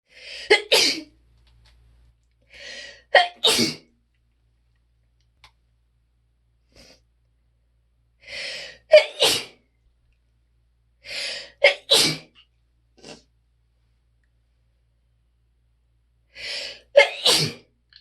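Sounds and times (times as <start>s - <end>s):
person sneezing: 3.1s - 3.9s, 8.7s - 9.6s, 11.3s - 12.3s, 16.6s - 17.6s.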